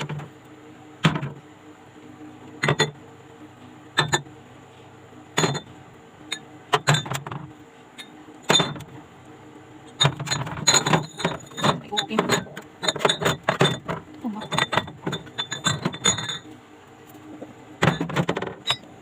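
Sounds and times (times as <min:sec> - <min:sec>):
glass bottles clinking: 0:05.4 - 0:05.7, 0:08.5 - 0:08.8, 0:10.0 - 0:16.5.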